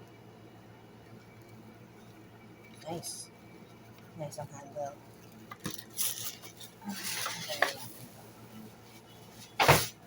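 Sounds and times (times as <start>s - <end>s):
packaging rustling and clattering: 5.2s - 8.1s.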